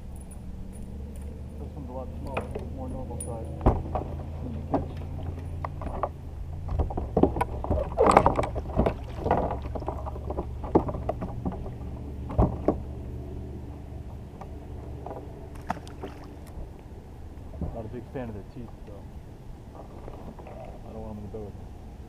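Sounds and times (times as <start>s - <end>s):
steady low hum: 0.0s - 22.0s
knocks and clatter on kayak: 3.4s - 13.2s, 14.0s - 16.7s, 17.5s - 18.0s.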